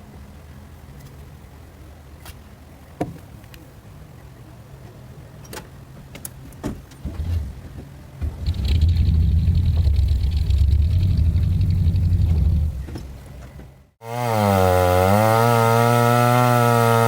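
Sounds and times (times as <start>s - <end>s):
sharp knocks and clunks: 6.6s - 13.8s
truck engine idling and revving: 8.3s - 13.0s.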